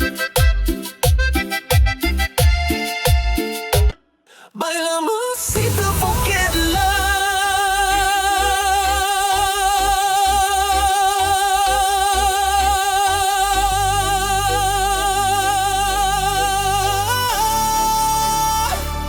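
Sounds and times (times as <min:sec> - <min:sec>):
low bass line: 0:00.0 - 0:03.9, 0:05.6 - 0:19.0
high voice singing with vibrato: 0:04.5 - 0:19.0.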